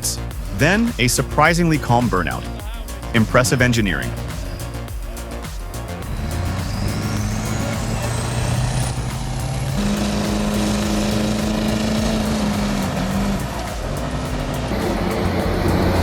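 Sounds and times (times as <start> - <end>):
turbo whistle: 0.0 - 16.0
diesel truck engine under load: 6.0 - 16.0.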